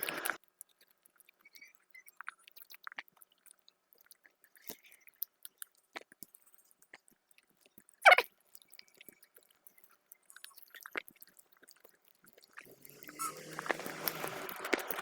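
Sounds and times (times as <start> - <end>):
wet chewing and lip smacks: 0.0 - 15.0.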